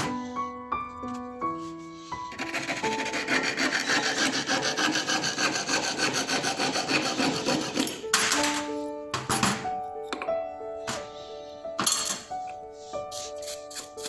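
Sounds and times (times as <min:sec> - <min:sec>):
background music: 0:00.0 - 0:14.0
hand tool rasping on metal ring: 0:02.3 - 0:08.0.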